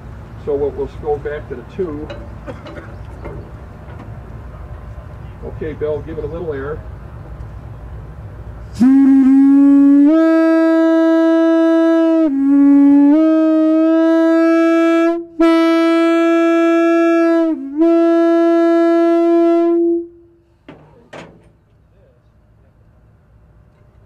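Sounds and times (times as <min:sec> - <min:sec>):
locomotive air horn blowing: 0:08.6 - 0:20.6.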